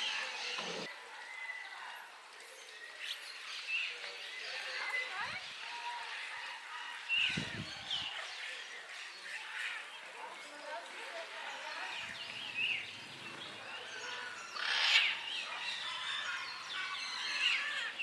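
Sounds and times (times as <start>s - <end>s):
birds chirping: 0.0s - 0.9s, 7.0s - 18.0s.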